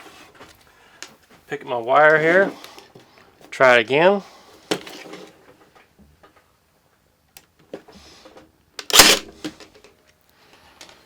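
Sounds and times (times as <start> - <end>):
stapler firing clack: 8.8 - 9.3.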